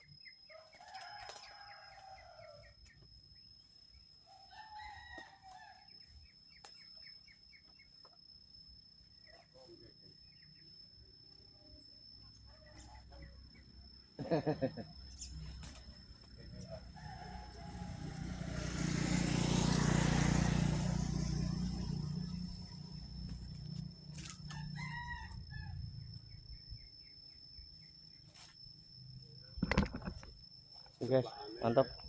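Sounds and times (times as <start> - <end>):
rooster crowing: 0.5 - 2.8, 4.2 - 6.0, 16.4 - 22.4, 24.2 - 26.1.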